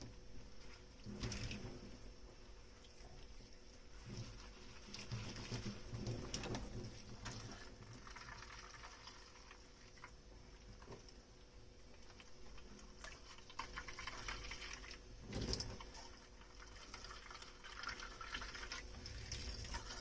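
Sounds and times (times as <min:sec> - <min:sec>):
running water: 0:11.9 - 0:20.0.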